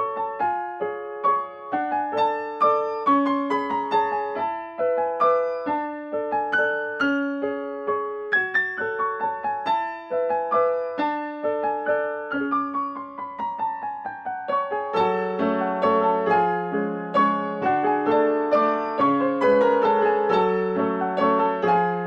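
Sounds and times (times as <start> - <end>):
gentle piano melody: 0.0 - 22.0.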